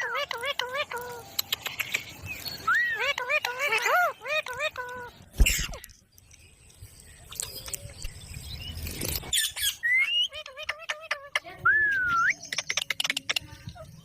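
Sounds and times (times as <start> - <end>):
parakeet calling and whistling: 0.0 - 5.9
sharp clicks: 1.3 - 2.6.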